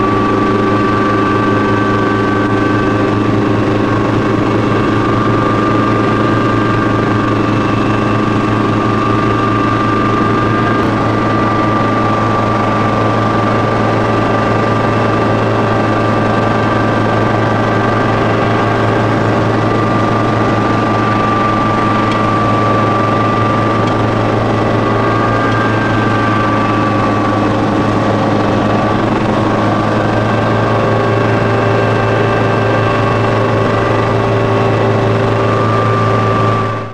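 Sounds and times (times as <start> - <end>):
diesel engine drone: 0.0 - 36.9
high mechanical whine: 0.0 - 36.9.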